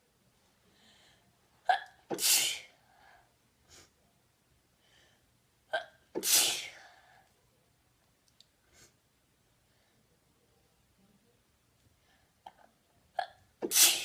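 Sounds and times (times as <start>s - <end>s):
woman sneezing: 1.7s - 2.7s, 6.2s - 6.8s, 13.6s - 14.0s.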